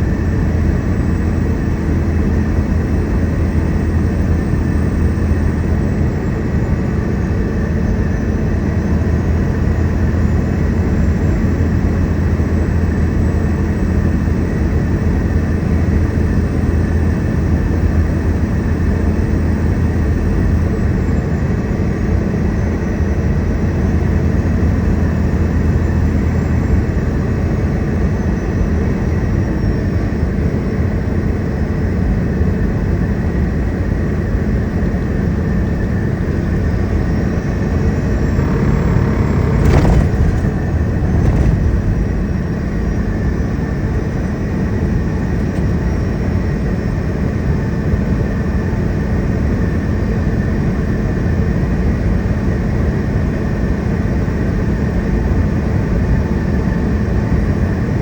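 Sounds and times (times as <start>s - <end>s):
low engine rumble: 0.0s - 29.6s, 34.0s - 48.0s.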